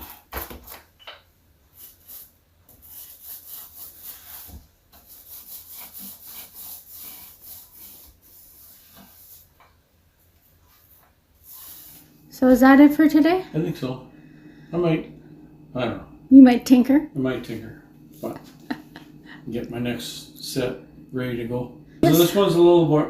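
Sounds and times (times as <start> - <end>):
paint roller rubbing on wood: 1.7 - 9.6, 10.5 - 13.2, 17.2 - 21.5.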